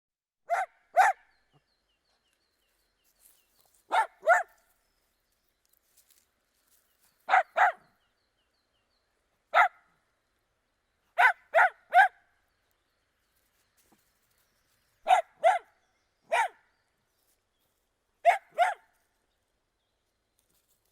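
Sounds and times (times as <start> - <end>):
dog barking: 0.5 - 1.3, 3.9 - 4.6, 7.3 - 7.8, 9.5 - 9.8, 11.2 - 12.2, 15.1 - 16.7, 18.2 - 18.9.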